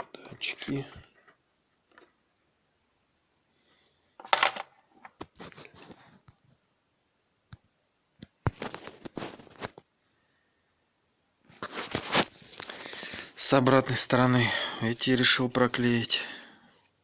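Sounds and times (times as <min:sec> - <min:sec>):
plastic scraping and rustling: 0:08.5 - 0:09.9, 0:11.5 - 0:13.3.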